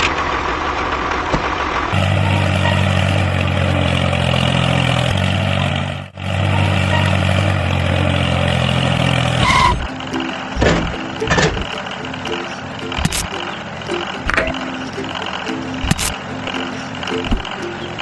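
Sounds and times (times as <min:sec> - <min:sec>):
toy truck engine idling: 0:00.0 - 0:18.0.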